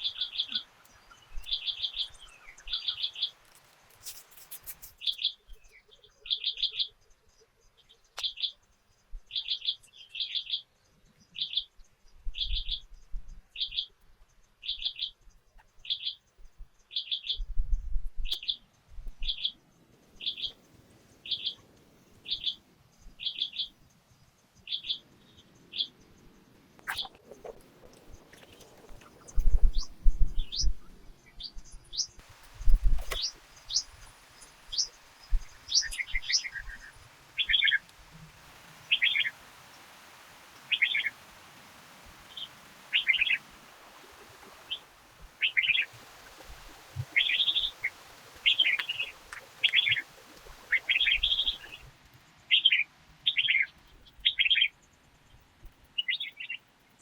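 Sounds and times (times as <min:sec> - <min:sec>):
bird chirping: 0:00.0 - 0:03.4, 0:04.1 - 0:19.6, 0:22.2 - 0:23.8, 0:24.6 - 0:26.2, 0:26.9 - 0:37.9, 0:38.8 - 0:39.4, 0:40.6 - 0:41.2, 0:42.2 - 0:43.4, 0:45.4 - 0:45.9, 0:47.0 - 0:51.9, 0:52.5 - 0:54.8.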